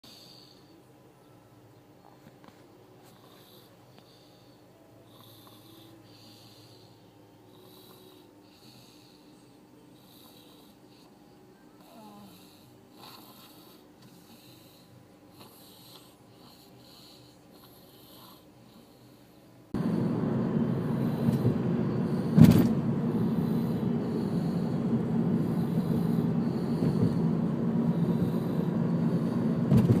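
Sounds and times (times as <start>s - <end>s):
person snoring softly: 2.0s - 30.0s
loud steady rushing noise: 19.8s - 30.0s.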